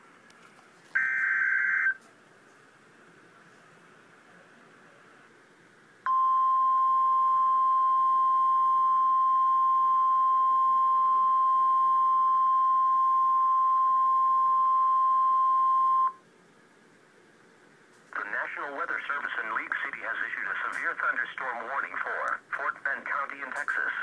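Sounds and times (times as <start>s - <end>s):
steady loud alert beep: 6.1s - 16.2s.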